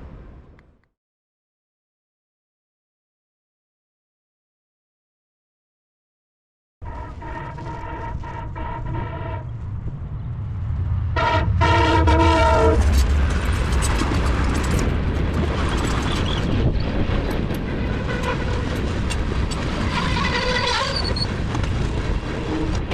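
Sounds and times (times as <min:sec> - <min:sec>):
locomotive air horn: 0:06.8 - 0:09.5, 0:11.2 - 0:13.0, 0:17.7 - 0:18.9, 0:19.8 - 0:21.2
higher pitched horn tone: 0:06.8 - 0:09.6, 0:11.2 - 0:13.0
train rumbling past: 0:06.8 - 0:22.9.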